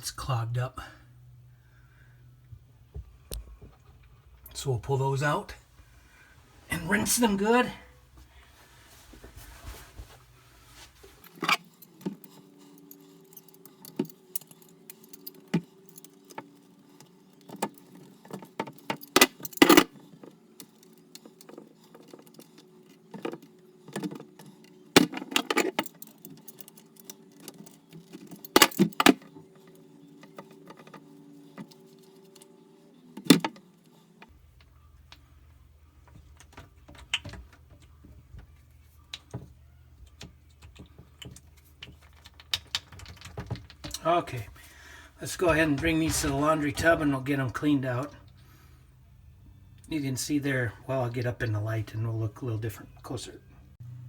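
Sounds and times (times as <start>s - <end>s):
steady low hum: 0.0s - 18.3s
metal plumbing parts clinking: 10.7s - 32.5s, 33.2s - 48.4s.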